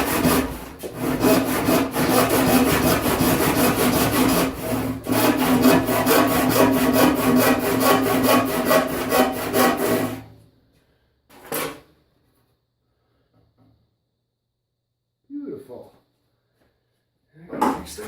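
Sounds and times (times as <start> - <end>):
hand saw cutting wood: 0.0 - 10.3.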